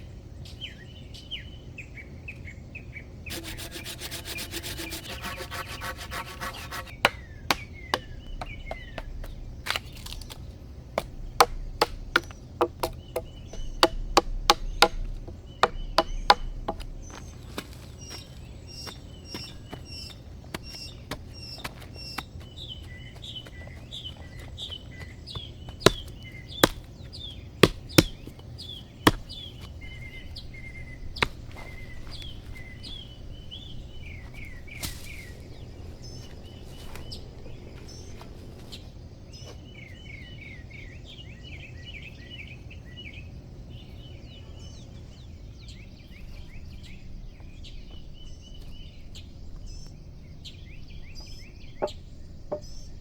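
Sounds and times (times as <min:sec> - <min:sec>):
small birds chirping: 0:00.0 - 0:53.0
sharp knocks: 0:03.3 - 0:10.4, 0:11.0 - 0:18.3, 0:25.4 - 0:26.9, 0:27.6 - 0:28.4, 0:29.1 - 0:33.0.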